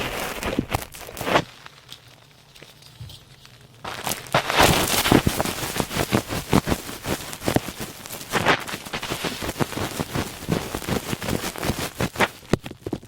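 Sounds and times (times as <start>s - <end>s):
scratching and crackling on microphone: 0.0s - 13.0s
rustling hiss: 3.8s - 12.5s.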